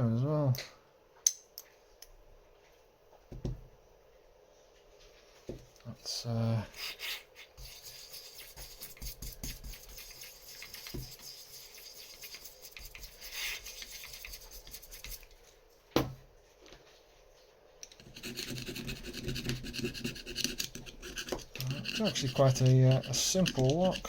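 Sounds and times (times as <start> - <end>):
brush scrubbing metal: 6.8 - 15.3, 18.2 - 24.0.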